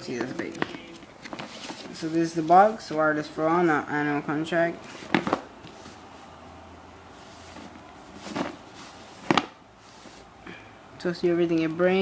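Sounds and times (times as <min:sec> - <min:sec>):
low steady hum: 0:00.0 - 0:12.0
soft rub on cardboard box: 0:07.2 - 0:10.3.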